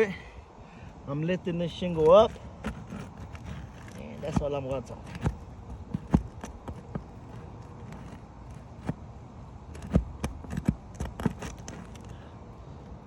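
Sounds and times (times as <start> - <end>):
roofing tool clicking on shingle: 1.7 - 9.0, 9.7 - 12.1.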